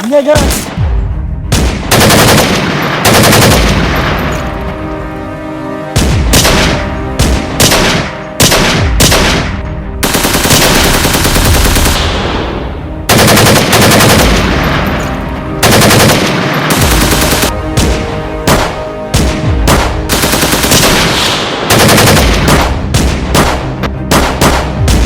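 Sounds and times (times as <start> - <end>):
gunshots: 0.3 - 4.5, 5.9 - 25.0
automatic gunfire: 1.6 - 4.0, 6.3 - 12.1, 13.1 - 14.6, 15.6 - 17.5, 18.4 - 25.0.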